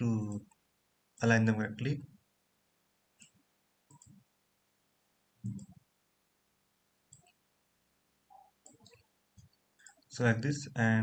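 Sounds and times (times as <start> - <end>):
computer mouse clicks: 3.2 - 4.2, 5.4 - 5.8, 7.1 - 7.4, 8.3 - 10.1.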